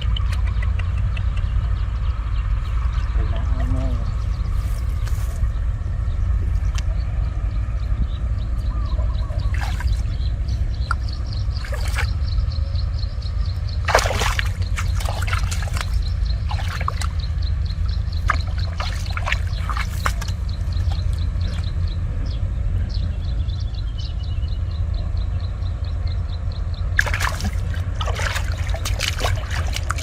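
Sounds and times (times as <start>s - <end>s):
steady low rumble: 0.0s - 30.0s
shallow water sloshing and splashing: 9.4s - 10.3s, 10.9s - 12.2s, 13.7s - 21.7s, 27.0s - 30.0s.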